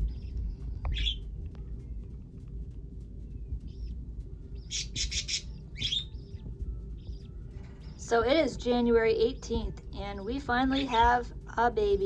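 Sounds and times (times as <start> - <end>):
parakeets chirping: 0.0 - 1.3, 3.7 - 9.6
steady low rumble: 0.0 - 12.0.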